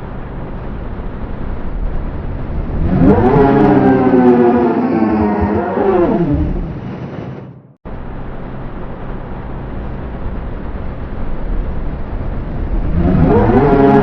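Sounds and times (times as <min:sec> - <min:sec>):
noisy vacuum-like drone: 0:00.0 - 0:14.0
gliding pitched tones: 0:01.8 - 0:07.8.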